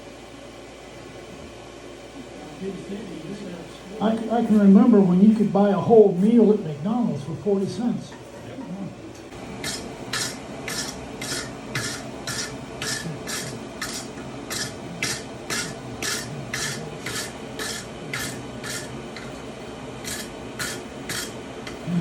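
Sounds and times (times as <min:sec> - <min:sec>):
hand file rasping on steel: 0:09.6 - 0:19.4, 0:20.0 - 0:21.9.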